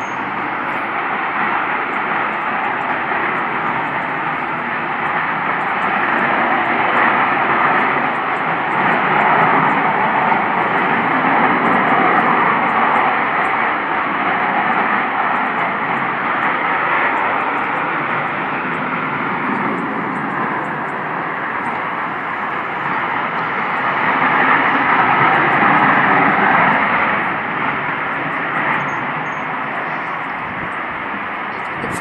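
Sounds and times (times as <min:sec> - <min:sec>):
loud rushing drone from sky: 0:00.0 - 0:32.0.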